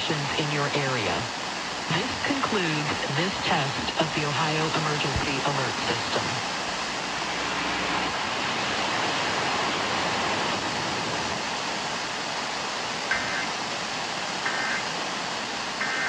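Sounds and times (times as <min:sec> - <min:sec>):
radio static hiss: 0:00.0 - 0:16.0
two-tone data bursts: 0:13.1 - 0:13.5, 0:14.4 - 0:14.9, 0:15.8 - 0:16.0.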